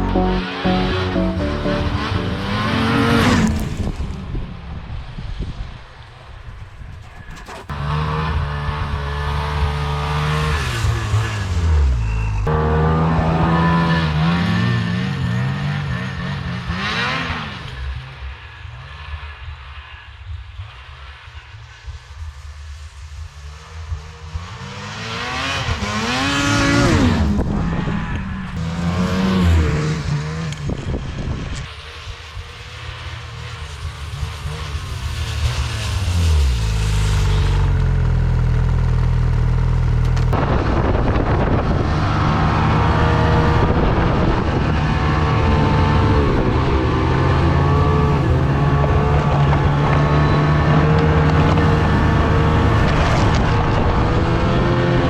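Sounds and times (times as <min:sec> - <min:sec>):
snowmobile engine revving: 0:24.3 - 0:30.8, 0:31.9 - 0:55.0.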